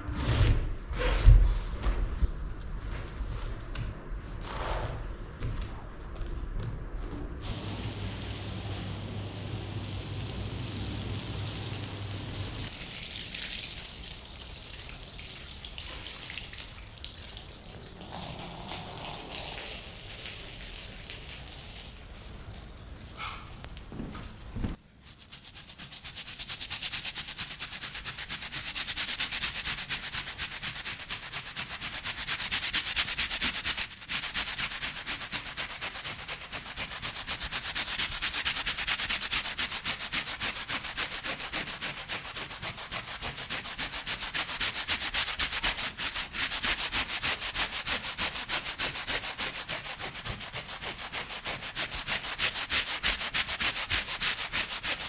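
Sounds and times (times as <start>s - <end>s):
brush scrubbing rug: 25.0s - 55.0s.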